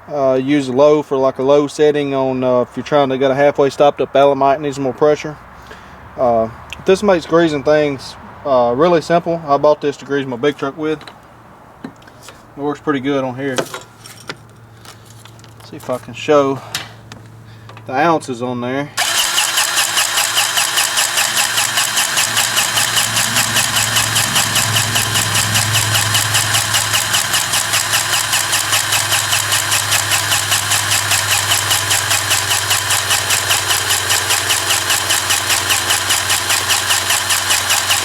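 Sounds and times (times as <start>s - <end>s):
grease gun pump pulsing: 19.0s - 38.0s.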